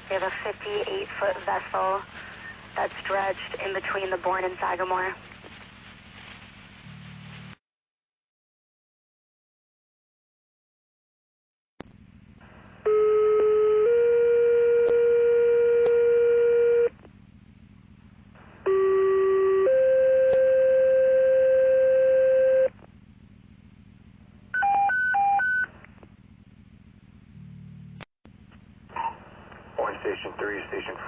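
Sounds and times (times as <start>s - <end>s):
two-tone paging tones over radio: 18.7s - 22.7s.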